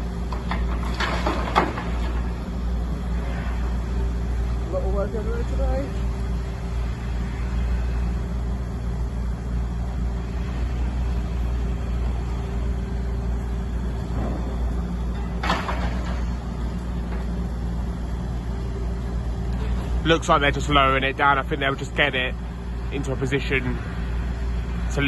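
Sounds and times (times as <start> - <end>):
crane engine rumbling: 0.0 - 25.0.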